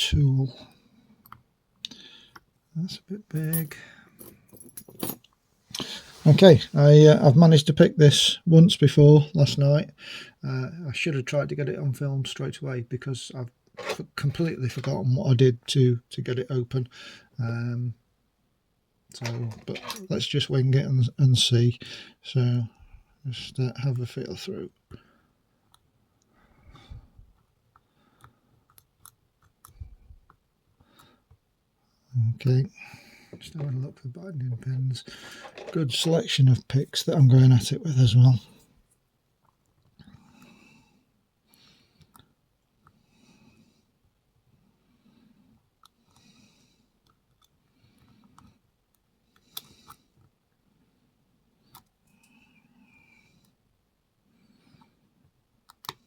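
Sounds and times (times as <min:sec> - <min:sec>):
soft breathing: 0:03.4 - 0:05.1, 0:05.7 - 0:06.8, 0:26.2 - 0:28.8, 0:32.7 - 0:33.6, 0:35.0 - 0:35.7, 0:40.0 - 0:55.4.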